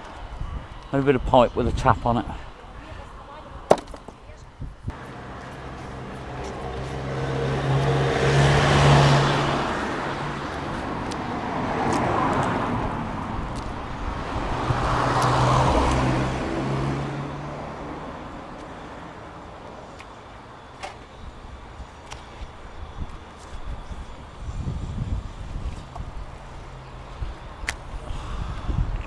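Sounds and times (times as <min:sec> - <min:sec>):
cars driving past: 0:04.9 - 0:20.7, 0:24.2 - 0:29.0.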